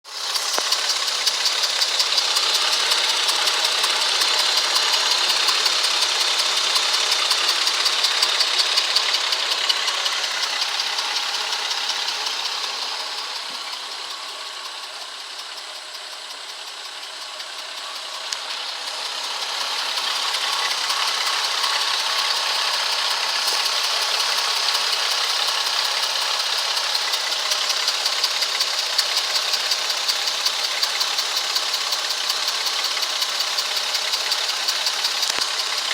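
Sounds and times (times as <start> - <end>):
car engine idling: 0.0 - 35.9
rapid even ticking: 0.2 - 35.9.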